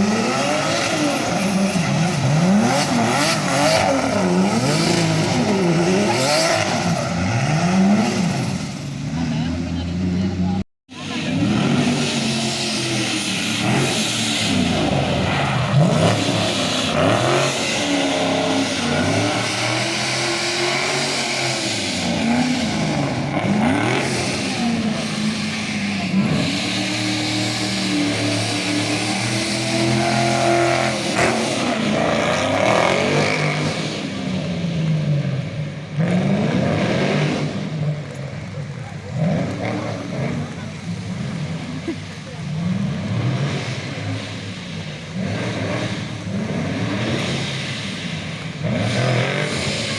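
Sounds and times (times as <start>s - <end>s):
rally car engine revving hard: 0.0s - 49.9s.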